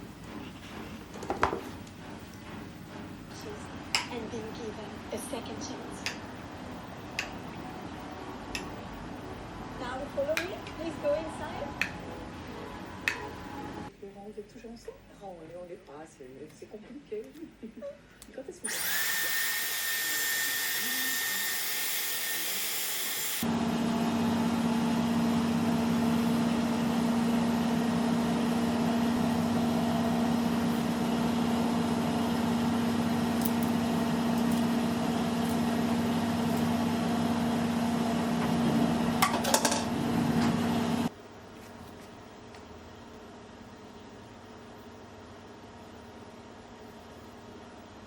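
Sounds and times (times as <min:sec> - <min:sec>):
electric appliance motor humming: 0:18.7 - 0:41.1.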